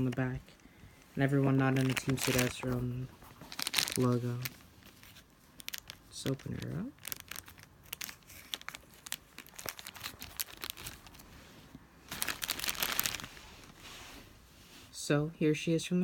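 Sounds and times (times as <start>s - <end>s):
plastic bag tearing and crinkling: 1.3s - 11.3s, 12.1s - 13.8s.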